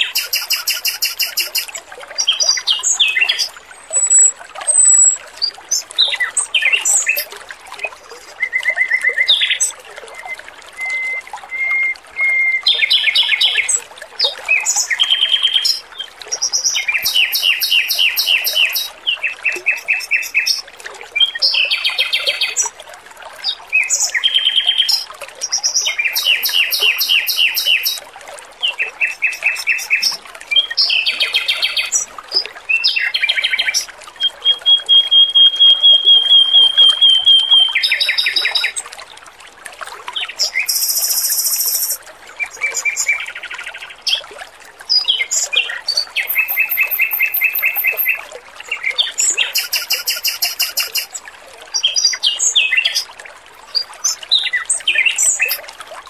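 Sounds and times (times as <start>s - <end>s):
bird singing trills: 0.0s - 1.7s, 2.5s - 6.2s, 33.0s - 38.8s, 40.5s - 42.0s, 46.2s - 48.2s, 49.4s - 51.1s
trickle of running water: 0.0s - 56.0s.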